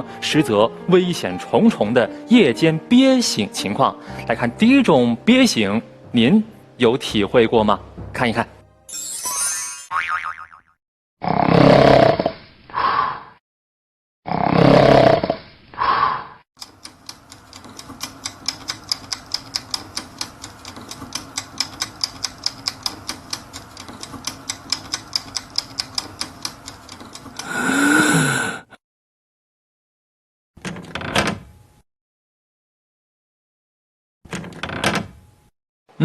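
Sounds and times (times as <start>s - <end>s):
cartoon snoring: 11.2s - 13.4s, 14.2s - 16.4s, 27.4s - 28.8s
steady ticking: 16.6s - 27.5s.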